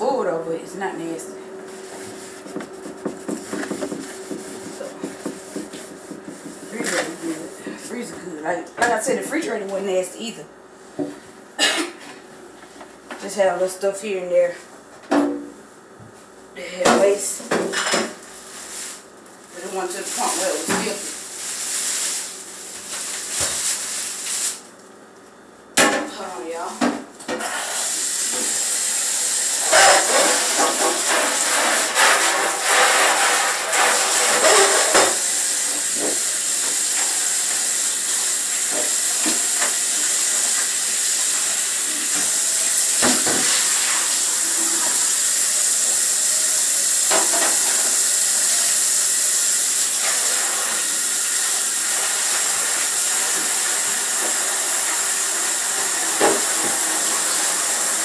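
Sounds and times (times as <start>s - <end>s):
loud steady hiss: 27.8s - 58.0s.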